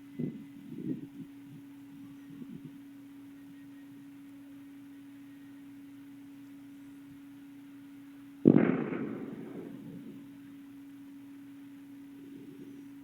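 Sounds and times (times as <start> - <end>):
steady low hum: 0.0 - 13.0
distant explosion boom: 8.4 - 10.2.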